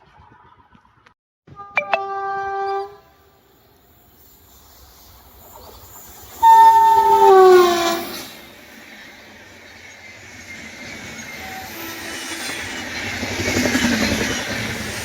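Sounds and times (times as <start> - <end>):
train horn: 1.5 - 3.5, 6.4 - 8.1
train running noise: 2.5 - 15.0.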